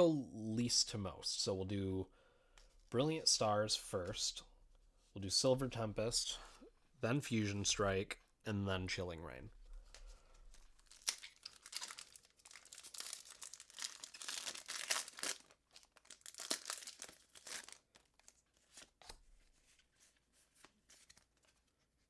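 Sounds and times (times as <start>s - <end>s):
foil wrapper tearing and crinkling: 10.5s - 18.9s.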